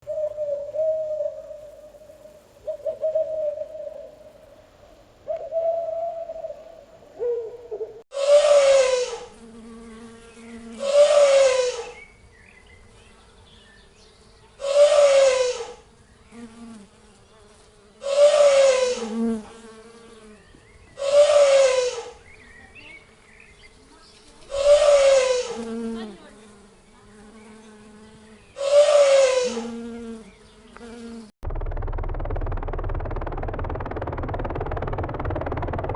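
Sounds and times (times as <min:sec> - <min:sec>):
synthetic hornet swarm buzzing: 0:17.9 - 0:20.2, 0:24.4 - 0:31.3.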